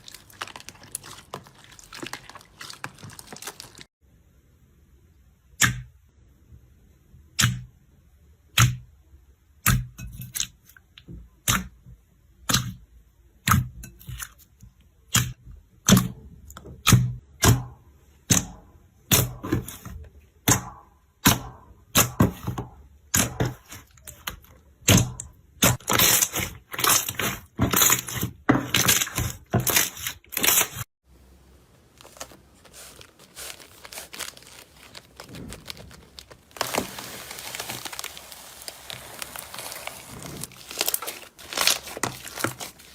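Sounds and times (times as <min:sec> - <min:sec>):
slime crackling when squished: 0:00.0 - 0:03.9, 0:32.0 - 0:42.9.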